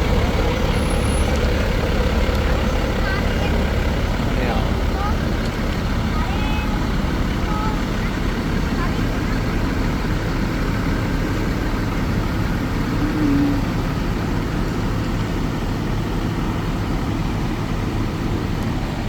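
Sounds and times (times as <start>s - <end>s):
vehicle engine and road noise: 0.0s - 19.0s
short steady tone: 12.9s - 13.8s.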